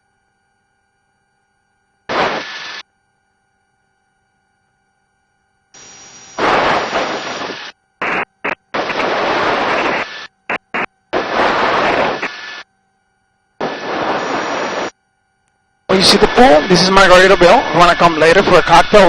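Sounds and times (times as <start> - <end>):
helicopter rotor and wind noise: 5.8 - 12.6, 13.6 - 14.9, 15.9 - 19.0.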